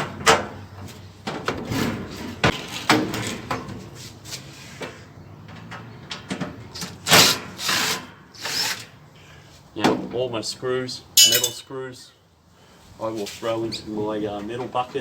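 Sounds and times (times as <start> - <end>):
knocks and clatter of handling tools: 11.2 - 11.6.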